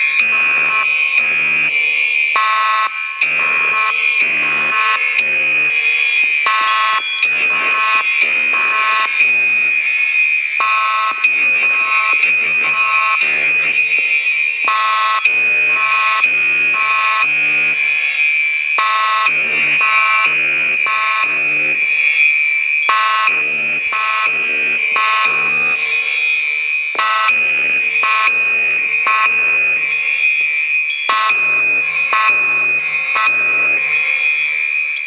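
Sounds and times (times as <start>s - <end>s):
continuous high-pitched tone: 0.0s - 35.0s
fire alarm horn blasts: 0.0s - 35.0s.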